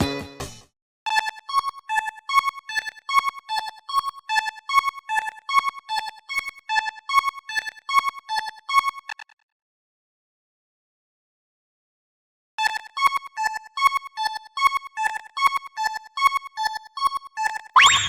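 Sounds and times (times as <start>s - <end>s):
music: 0.0s - 8.6s, 12.6s - 17.8s.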